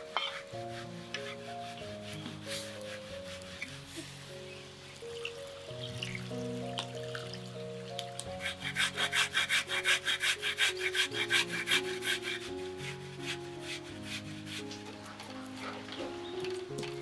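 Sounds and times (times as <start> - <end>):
background music: 0.0 - 17.0
fast rhythmic scraping: 8.3 - 16.2.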